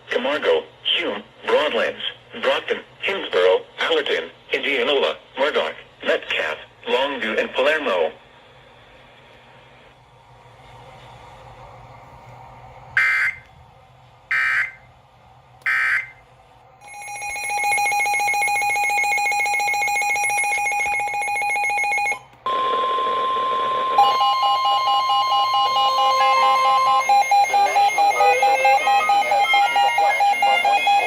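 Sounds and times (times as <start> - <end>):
steady warning tone: 12.9 - 13.6, 14.3 - 15.0, 15.6 - 31.0
digital data bursts: 24.0 - 31.0.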